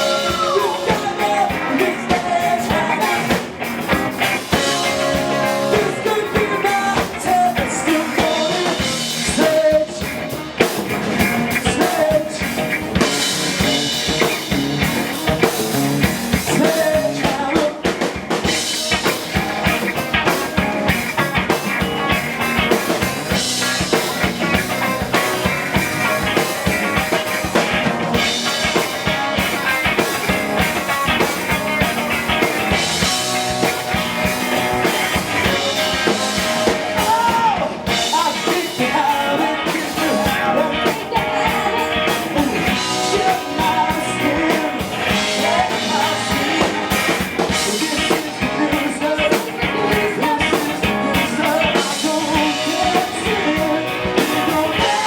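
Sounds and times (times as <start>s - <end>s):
person singing: 0.0s - 3.6s, 4.5s - 14.5s, 16.4s - 18.0s, 34.8s - 55.0s
drum kit beat: 0.0s - 55.0s
electric guitar: 0.0s - 55.0s.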